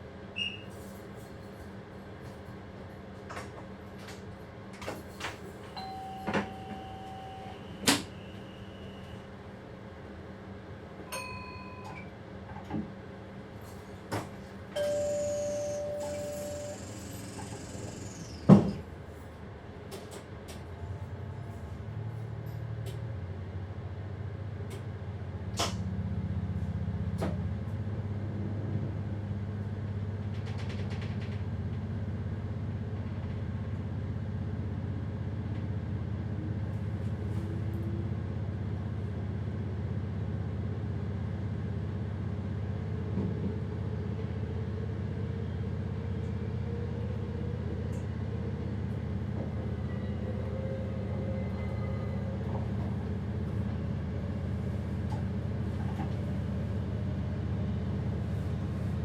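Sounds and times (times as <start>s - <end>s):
train electric traction hum: 0.0s - 59.0s
two-tone chime: 5.8s - 7.4s, 11.1s - 12.0s, 14.8s - 17.2s
short beeps: 5.8s - 9.2s, 14.8s - 18.2s
train doors hissing and slamming: 6.2s - 9.0s, 14.2s - 18.9s.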